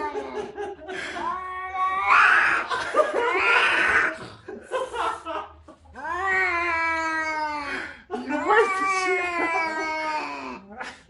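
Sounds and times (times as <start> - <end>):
cat hissing: 1.2 - 2.7, 3.4 - 4.2
cat yowling: 1.3 - 2.7, 6.0 - 7.7.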